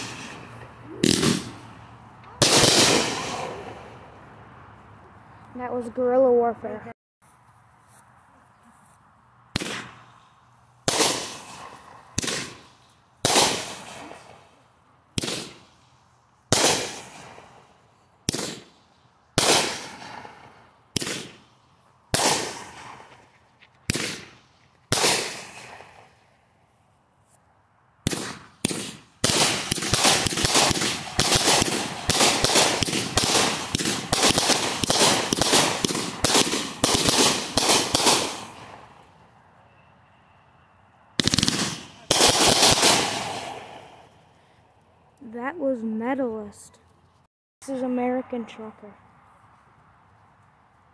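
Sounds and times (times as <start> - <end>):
firework cake shots: 0.0 - 1.7, 2.3 - 3.8, 10.8 - 14.4, 19.4 - 21.4, 22.2 - 23.3, 28.1 - 38.9, 41.2 - 44.2
rapid firework barrage: 0.0 - 1.8, 2.4 - 4.0, 9.5 - 10.1, 10.8 - 14.5, 15.2 - 15.7, 16.5 - 17.7, 18.3 - 18.8, 19.4 - 21.4, 22.1 - 23.3, 23.9 - 26.1, 28.0 - 39.0, 41.2 - 44.2.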